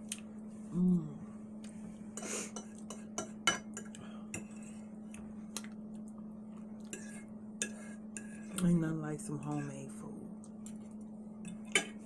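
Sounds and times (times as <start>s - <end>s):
steady low hum: 0.0s - 12.0s
utensils clinking on a plate: 11.4s - 12.0s.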